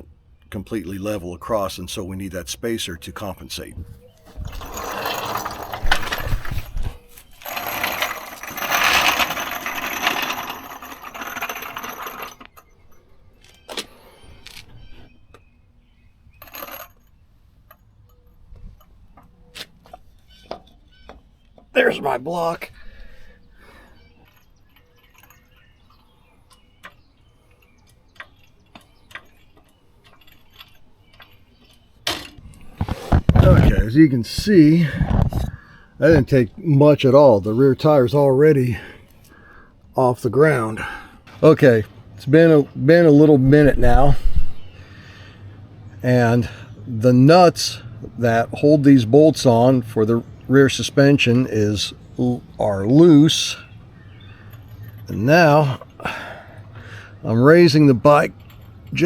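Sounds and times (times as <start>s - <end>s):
metal objects clinking and scraping: 4.2s - 13.8s, 16.4s - 19.0s, 23.6s - 26.1s, 27.6s - 33.8s, 54.1s - 56.0s, 58.1s - 59.0s.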